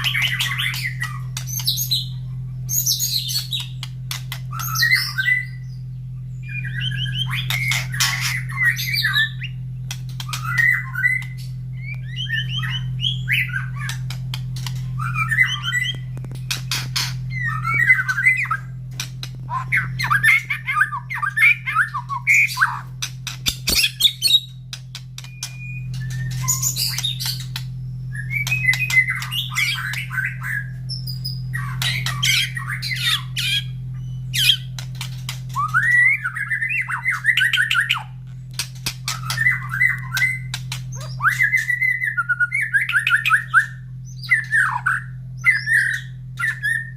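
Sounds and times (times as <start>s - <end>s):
steady low hum: 0.0s - 46.9s
bird singing whistled phrases: 23.7s - 34.7s, 39.1s - 46.9s.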